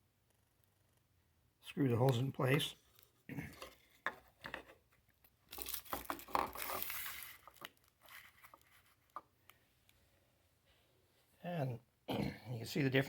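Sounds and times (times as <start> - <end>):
packaging crinkling and rustling: 2.9 - 9.4.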